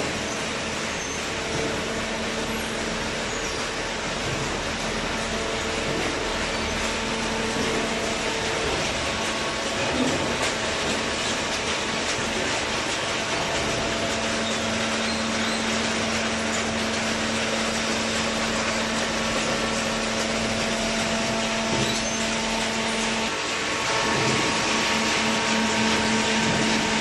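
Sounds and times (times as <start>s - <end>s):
baling machine whirring: 0.0s - 27.0s.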